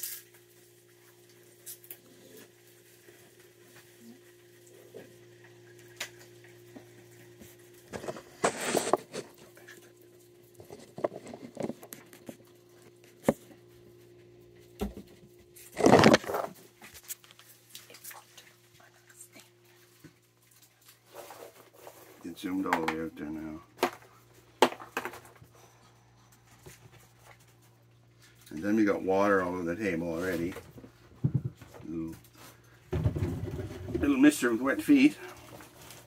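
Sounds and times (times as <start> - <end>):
raccoons scrabbling: 1.6 - 23.0.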